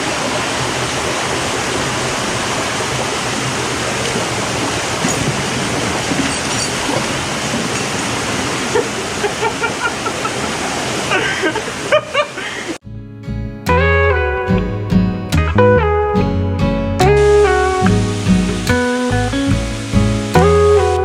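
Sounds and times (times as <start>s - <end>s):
waterfall rushing: 0.0s - 12.8s, 17.0s - 21.0s.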